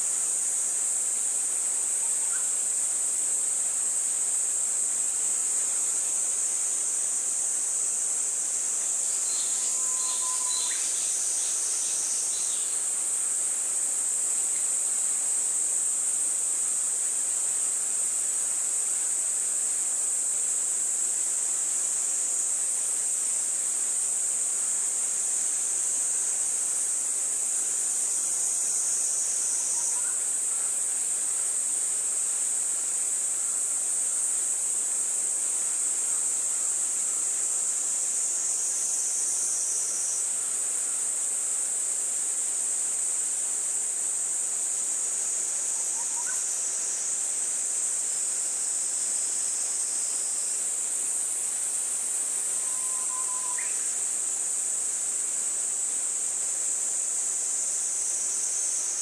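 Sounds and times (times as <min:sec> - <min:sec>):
high-pitched insect chorus: 0:00.0 - 0:59.0
pulsing insect call: 0:01.7 - 0:03.0, 0:03.6 - 0:13.0, 0:22.3 - 0:31.5, 0:44.1 - 0:56.0.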